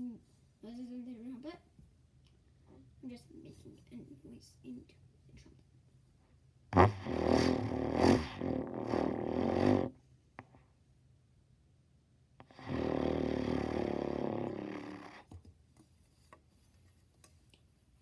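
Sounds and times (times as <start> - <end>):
raspy noise into trumpet: 6.8 - 9.8.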